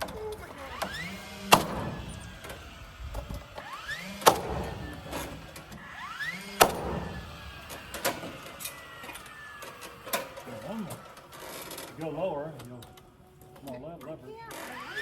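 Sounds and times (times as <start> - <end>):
nail gun shots: 0.0 - 10.4
motor whine rising in pitch: 0.0 - 13.4, 14.5 - 15.0
knocks of boards: 4.2 - 5.2.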